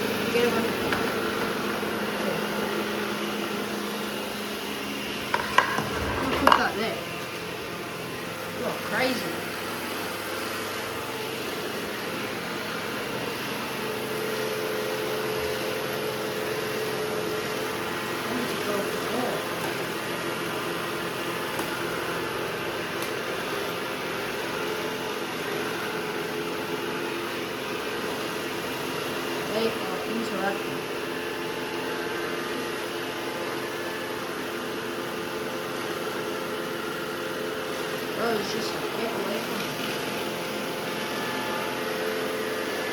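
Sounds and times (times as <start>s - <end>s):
robot vacuum cleaner whirring: 0.0s - 42.9s
robot vacuum whirring: 0.3s - 14.2s.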